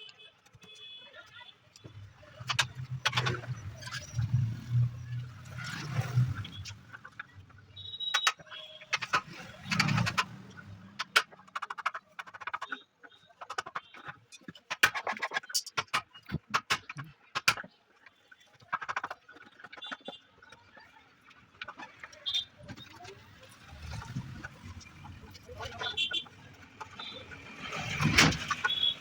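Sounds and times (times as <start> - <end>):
sharp knocks and clicks: 1.8 - 12.8, 13.4 - 17.8.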